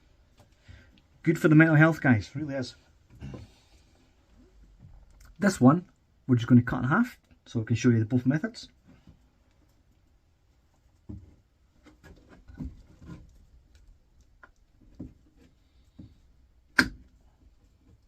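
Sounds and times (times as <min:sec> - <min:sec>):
light knocks and rustles: 0:10.8 - 0:13.8, 0:14.8 - 0:16.3.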